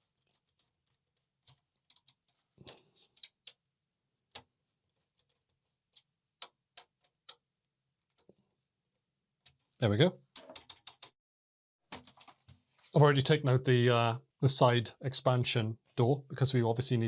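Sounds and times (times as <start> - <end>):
screwdriver clicking on metal: 10.4 - 11.1.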